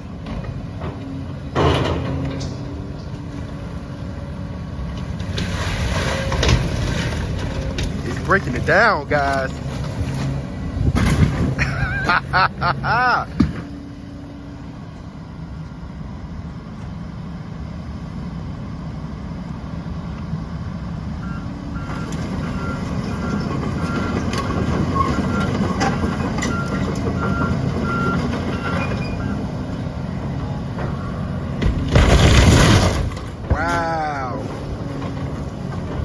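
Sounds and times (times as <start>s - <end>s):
excavator diesel engine: 0.0s - 36.0s
metal clanks: 1.6s - 3.2s
reversing alarm beeping: 21.2s - 29.5s, 30.3s - 31.5s.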